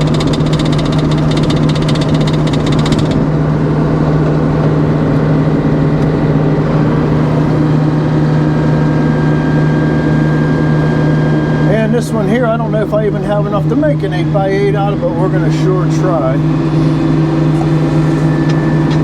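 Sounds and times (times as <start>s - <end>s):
fast high clatter: 0.0s - 3.3s
sawmill engine running: 0.0s - 19.0s.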